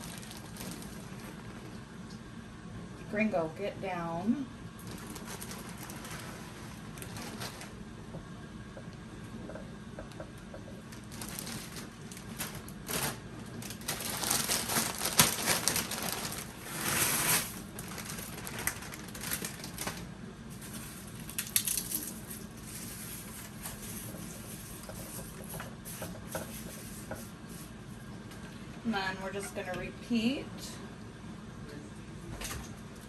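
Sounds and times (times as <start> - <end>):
chip bag crinkling: 0.0 - 1.8, 4.8 - 7.9, 10.6 - 27.8.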